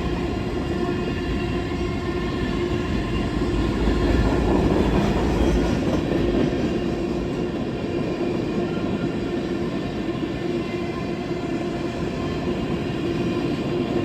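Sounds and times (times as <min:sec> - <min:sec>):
freight train rumbling past: 0:00.0 - 0:14.0.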